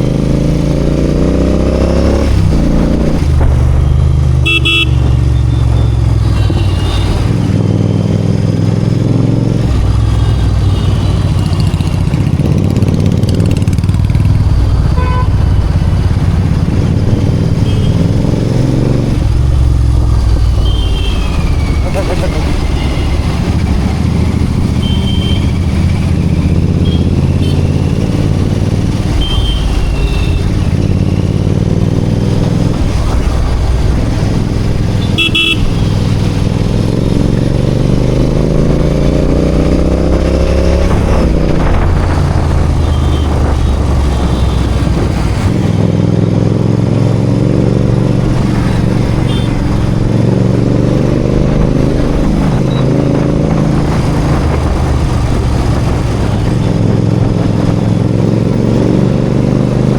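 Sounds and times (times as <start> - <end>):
motorcycle engine accelerating: 0.0 - 10.3, 11.2 - 59.9
horn toots: 4.4 - 5.2, 14.9 - 15.4, 35.0 - 35.9.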